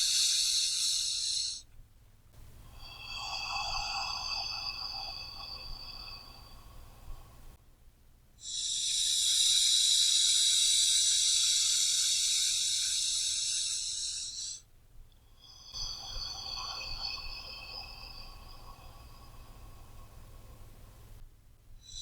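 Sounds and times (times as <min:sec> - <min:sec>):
person breathing deeply: 0:00.0 - 0:01.6, 0:02.4 - 0:07.6, 0:08.4 - 0:14.6.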